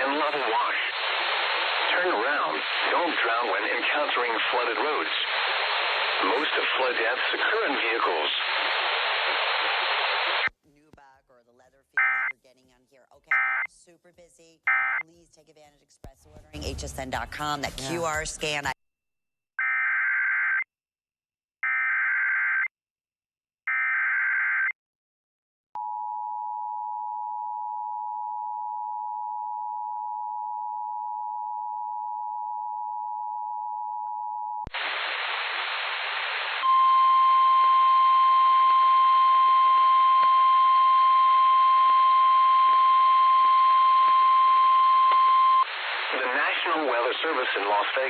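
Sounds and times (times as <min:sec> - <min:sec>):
radio hiss: 0:00.0 - 0:10.5, 0:34.7 - 0:36.8, 0:45.6 - 0:48.0
steady high alarm tone: 0:36.7 - 0:45.6.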